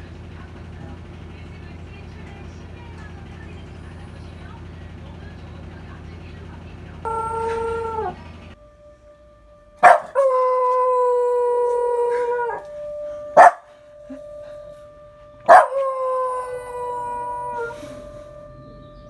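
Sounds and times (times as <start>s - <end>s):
dog howling: 7.0s - 8.5s, 9.8s - 19.0s
faint siren tone: 7.0s - 19.0s.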